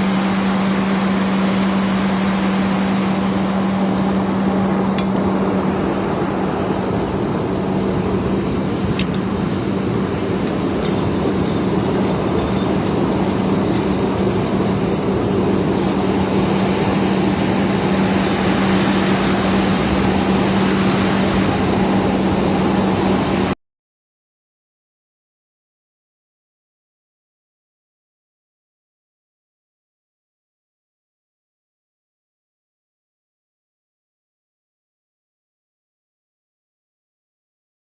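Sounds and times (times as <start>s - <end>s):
engine running with low hum: 0.0s - 23.6s.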